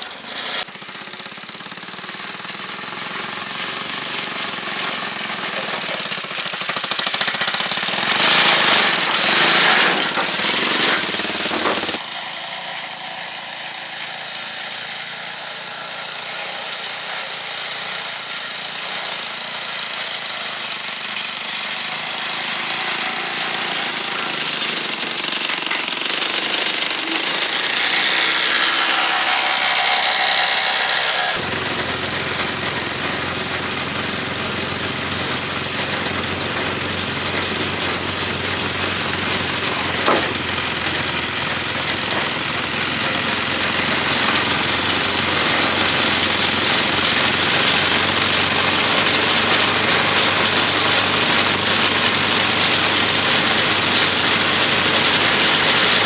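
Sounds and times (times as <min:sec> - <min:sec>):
tricycle engine pulsing: 0:00.0 - 0:56.0.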